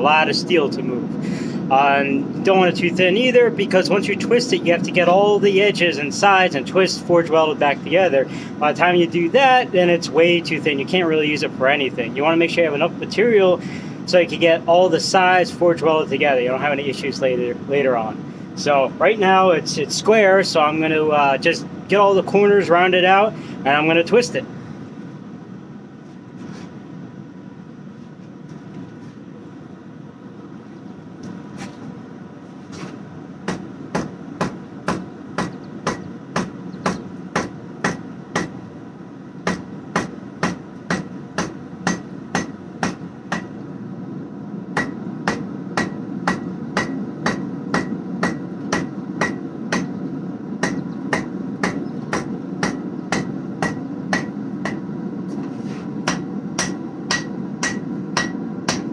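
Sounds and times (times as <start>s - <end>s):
hammer striking metal on anvil: 33.5s - 38.6s, 39.5s - 43.6s, 44.8s - 50.0s, 50.6s - 54.8s, 56.0s - 58.9s.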